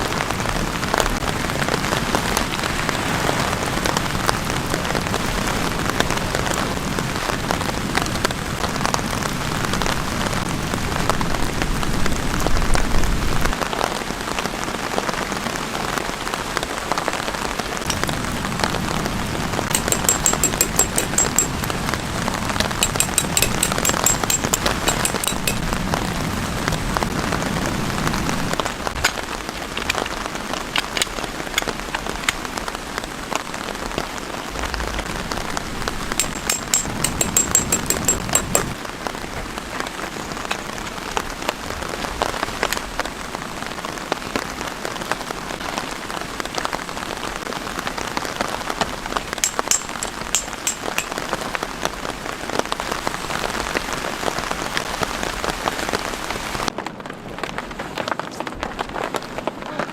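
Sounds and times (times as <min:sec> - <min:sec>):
rain drops tapping: 0:00.0 - 0:59.9
rapid high-pitched ticking trill: 0:19.8 - 0:21.6, 0:22.8 - 0:25.6, 0:36.2 - 0:38.7.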